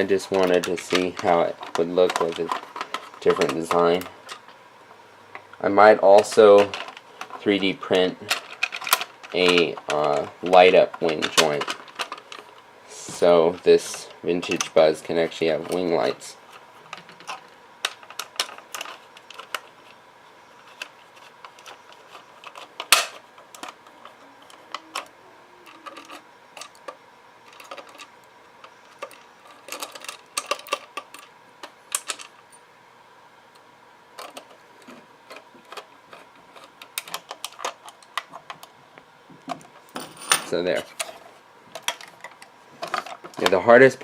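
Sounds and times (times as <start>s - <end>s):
plastic toy parts clicking: 24.4s - 28.1s.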